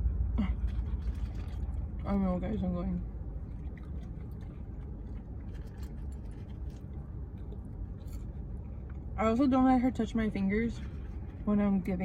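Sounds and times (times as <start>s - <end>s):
car idling rumble: 0.0s - 12.0s
eating clicks and rustles: 0.6s - 9.2s.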